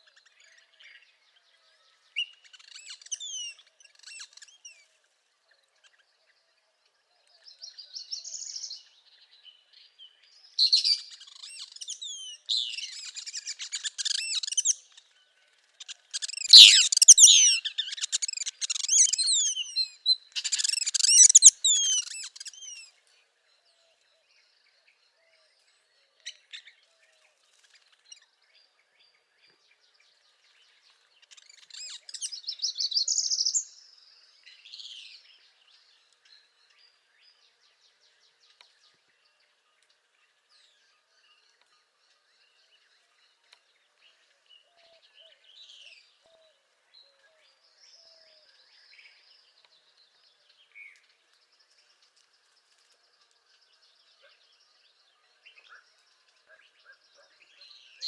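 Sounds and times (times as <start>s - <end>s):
faint distant bird chirps: 0.0s - 58.0s
bird buzzy rising trill: 16.6s - 17.4s.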